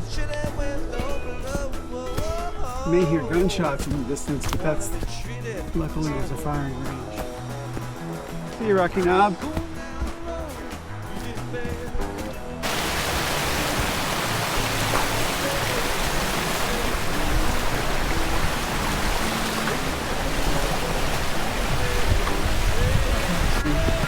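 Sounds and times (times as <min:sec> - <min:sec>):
background music: 0:00.0 - 0:24.0
rushing hiss: 0:12.6 - 0:24.0.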